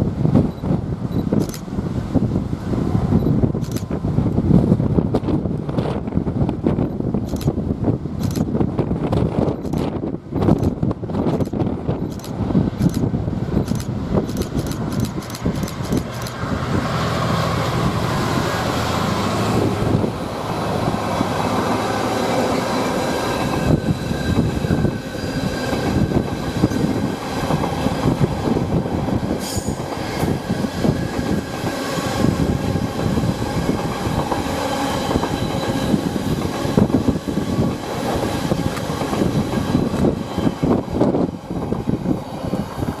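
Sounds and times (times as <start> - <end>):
train wheels clattering over rails: 18.2 - 42.0.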